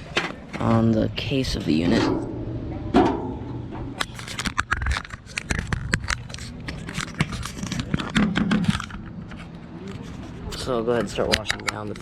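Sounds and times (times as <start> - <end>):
plastic clicks and scrapes: 3.8 - 12.0.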